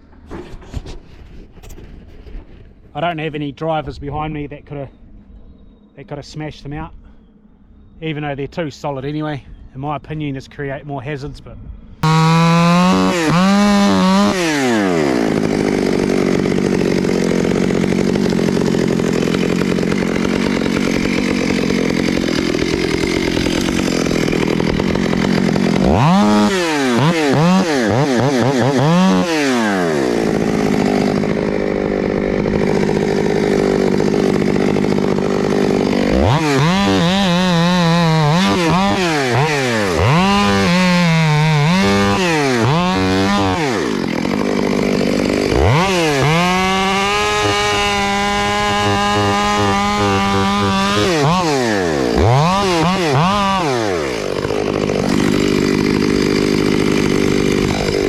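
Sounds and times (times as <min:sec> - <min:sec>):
chainsaw cutting tree trunk: 0:12.0 - 0:58.0.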